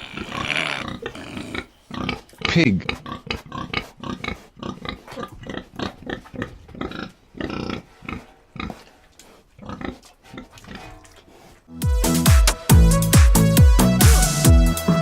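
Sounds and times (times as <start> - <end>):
pig grunting: 0.0 - 11.7.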